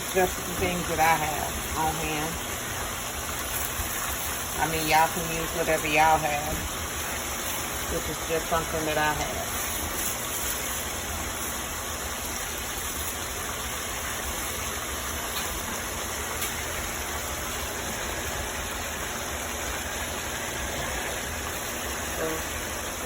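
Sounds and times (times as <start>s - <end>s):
food sizzling in a pan: 0.0s - 23.0s.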